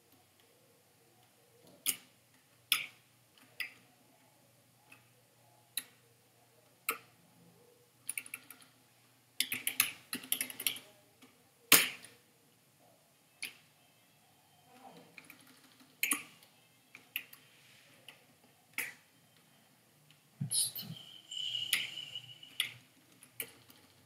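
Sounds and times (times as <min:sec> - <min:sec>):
computer keyboard typing: 0:08.1 - 0:08.8, 0:09.4 - 0:10.8, 0:15.2 - 0:17.4, 0:21.0 - 0:24.0.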